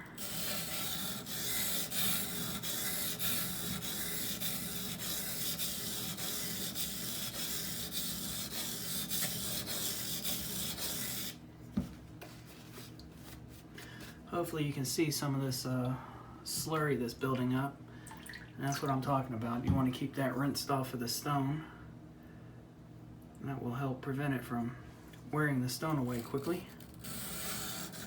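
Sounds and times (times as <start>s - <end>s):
knife scraping on whetstone: 0.0s - 11.4s, 26.0s - 28.0s.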